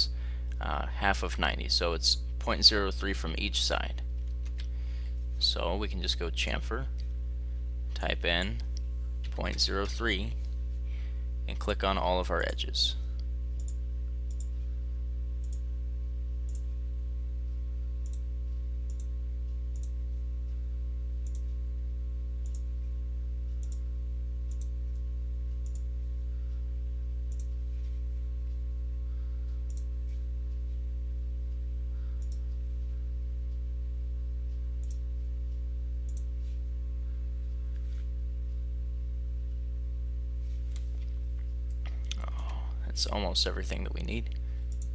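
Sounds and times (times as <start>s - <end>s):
loud low electrical hum: 0.0s - 44.9s
computer mouse clicking: 13.6s - 14.5s, 21.2s - 21.5s, 22.4s - 22.6s, 23.6s - 23.8s, 24.5s - 25.0s, 25.6s - 25.9s, 27.3s - 27.6s, 29.7s - 29.9s, 32.2s - 32.4s.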